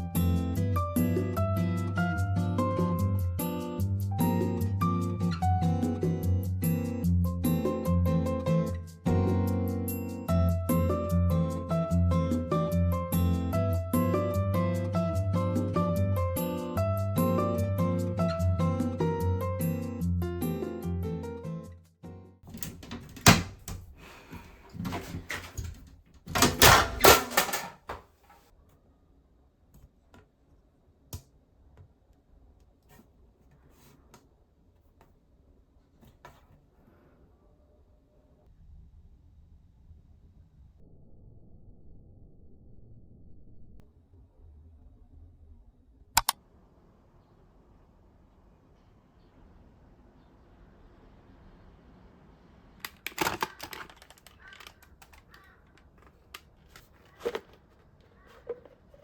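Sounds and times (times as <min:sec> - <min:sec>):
plastic parts clicking and clattering: 0:22.5 - 0:28.4, 0:52.8 - 0:59.0
small objects clicking and tapping: 0:52.8 - 0:57.7.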